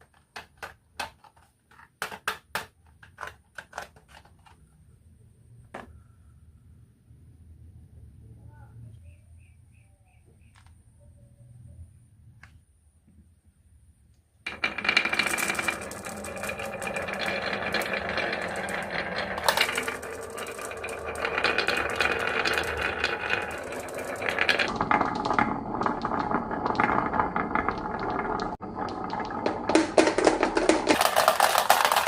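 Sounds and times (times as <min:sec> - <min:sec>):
marbles rattling down wooden run: 0:14.5 - 0:32.0.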